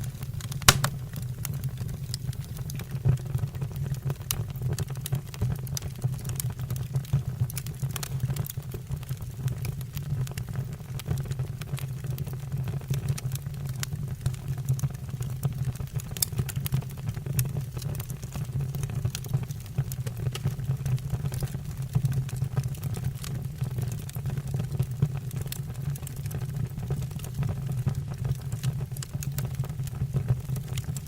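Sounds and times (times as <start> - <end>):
logs crackling and popping: 0.0 - 1.3.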